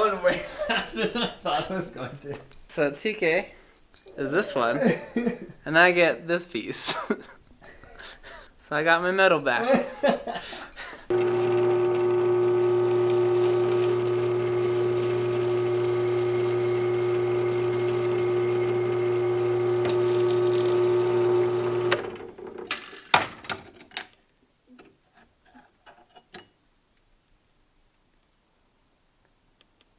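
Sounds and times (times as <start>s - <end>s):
machine motor humming: 11.1s - 22.6s.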